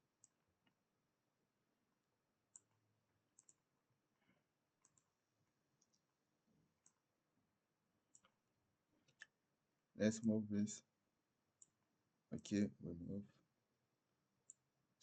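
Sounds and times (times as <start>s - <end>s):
computer mouse clicks: 2.5s - 3.7s, 4.8s - 5.1s, 5.8s - 6.1s, 6.8s - 7.0s, 8.1s - 8.4s, 11.6s - 11.8s, 14.4s - 14.6s.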